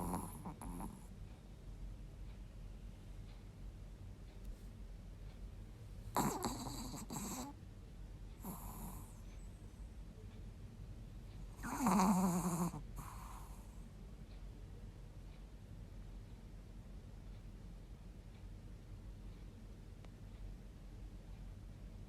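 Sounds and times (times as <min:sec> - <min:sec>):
person snoring: 0:06.2 - 0:07.5, 0:11.6 - 0:13.4.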